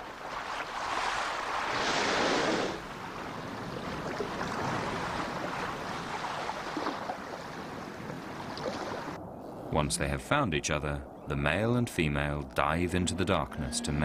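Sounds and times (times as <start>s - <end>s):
ocean water rushing: 0.0s - 10.1s.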